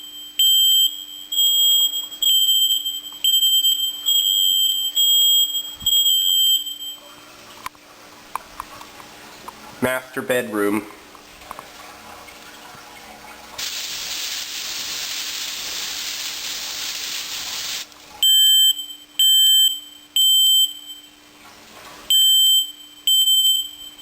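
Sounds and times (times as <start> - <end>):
smoke alarm beeping: 0.0 - 7.1, 13.6 - 21.2, 22.1 - 24.0
aerosol can hissing: 13.6 - 17.9.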